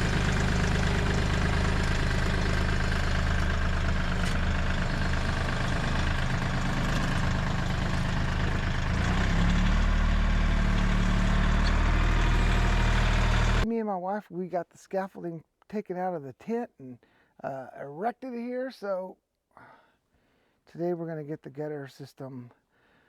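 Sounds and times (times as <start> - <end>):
engine idling: 0.0 - 13.6.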